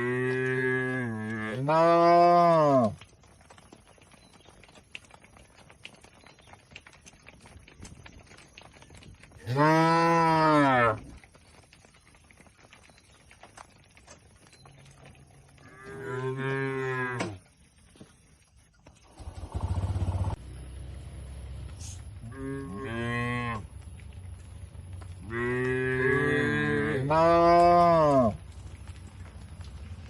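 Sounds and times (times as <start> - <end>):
cattle mooing: 0.0 - 3.0, 9.4 - 11.0, 15.5 - 17.4, 22.2 - 23.7, 25.2 - 28.4
brief low rumble: 20.3 - 22.4.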